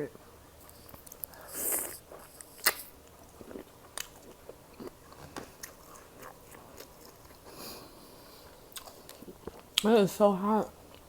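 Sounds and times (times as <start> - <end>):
close chewing with wet mouth smacks: 0.9 - 7.5, 8.4 - 9.9.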